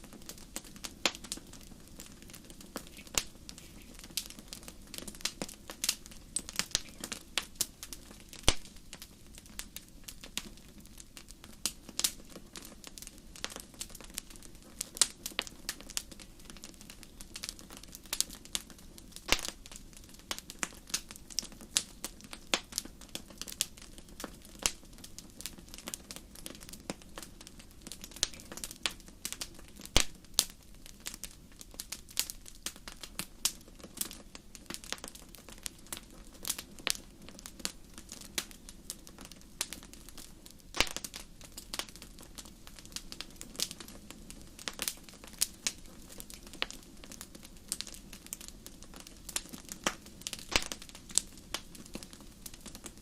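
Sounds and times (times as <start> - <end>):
campfire crackling: 0.0 - 53.0
loud wood pops: 19.3 - 19.6, 40.8 - 41.1, 50.4 - 50.8.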